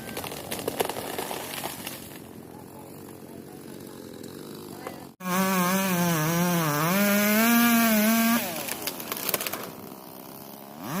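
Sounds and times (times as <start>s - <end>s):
sharp cracks: 0.0s - 2.3s, 8.5s - 9.8s
chainsaw engine revving: 2.6s - 11.0s.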